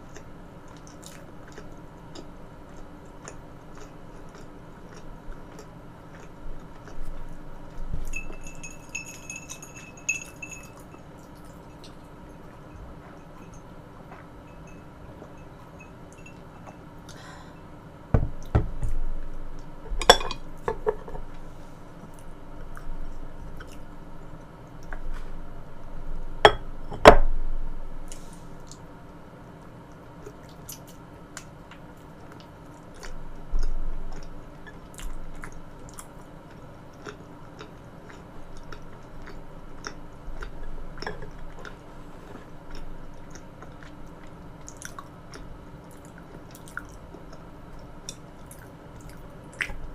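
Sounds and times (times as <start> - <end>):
utensil clinking against dish: 8.0 - 11.0, 20.0 - 21.2
wet chewing: 30.3 - 49.8.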